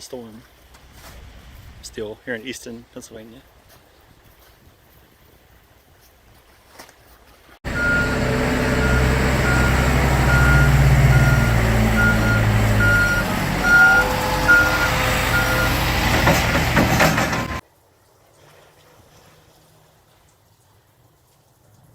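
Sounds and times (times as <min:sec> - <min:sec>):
heavy vehicle engine running: 0:07.6 - 0:17.6
reversing alarm beeping: 0:07.7 - 0:16.1.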